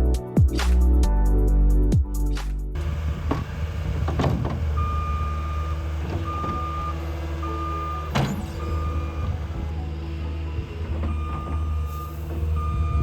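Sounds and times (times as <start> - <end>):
heavy vehicle engine running: 2.8 - 13.0
reversing alarm beeping: 4.7 - 13.0.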